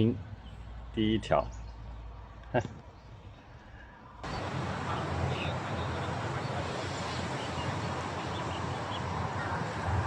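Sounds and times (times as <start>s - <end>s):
fast-flowing stream rushing: 4.2s - 10.0s.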